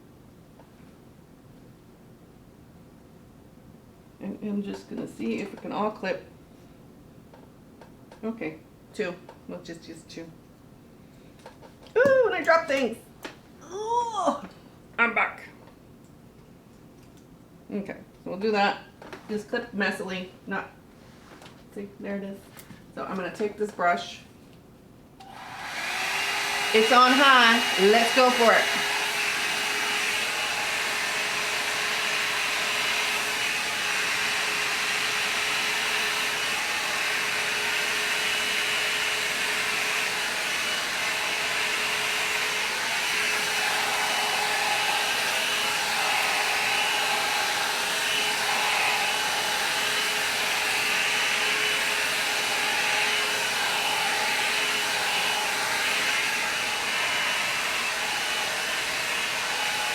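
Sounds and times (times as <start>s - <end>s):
hair dryer brush running: 25.2s - 59.9s.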